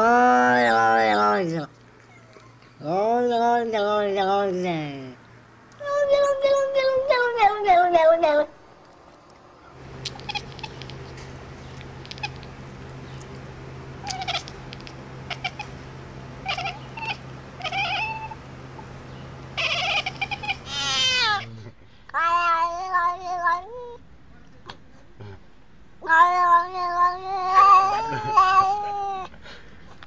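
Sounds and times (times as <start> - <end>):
steady low hum: 0.0 - 22.1
cat meowing and yowling: 16.5 - 18.4, 22.2 - 24.0, 26.0 - 29.3.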